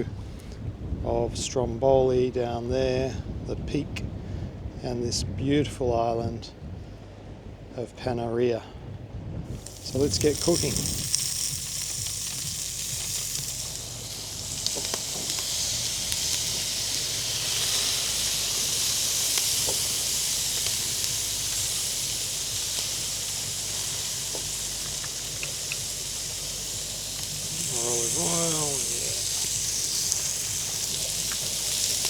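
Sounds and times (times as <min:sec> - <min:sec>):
seafood sizzling on a grill: 0:09.5 - 0:32.0.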